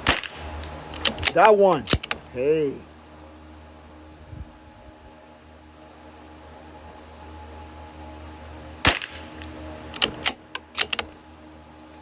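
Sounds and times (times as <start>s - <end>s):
rifle shot: 0.0s - 1.2s, 8.9s - 9.4s
rifle bolt clicks and knocks: 0.9s - 2.3s, 9.4s - 11.1s.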